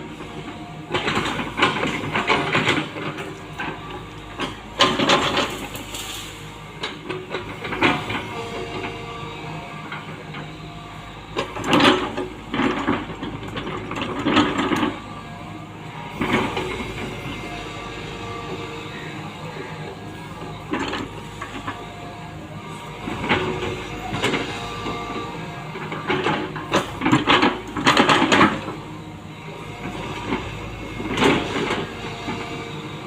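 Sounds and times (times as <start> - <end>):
excavator diesel engine: 0.0 - 33.0.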